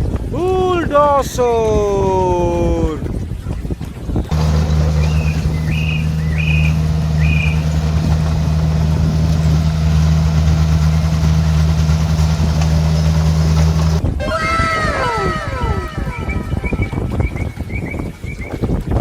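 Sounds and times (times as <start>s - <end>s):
bulldozer diesel engine hum: 4.3s - 14.0s.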